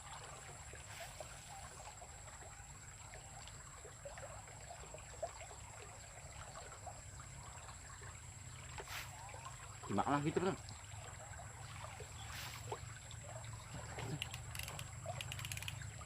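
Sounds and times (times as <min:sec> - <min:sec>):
water trickling in a ditch: 0:00.0 - 0:16.0.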